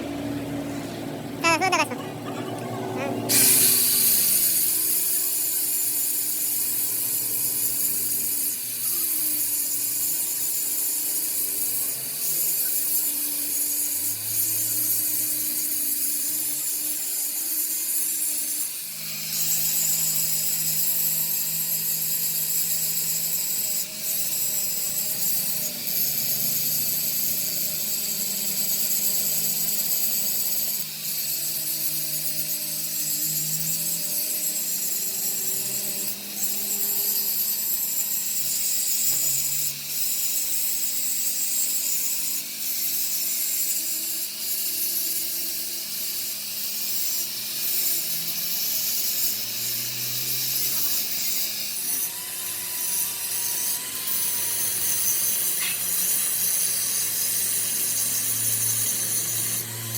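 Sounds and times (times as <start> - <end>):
power tool working metal: 0.0 - 59.9.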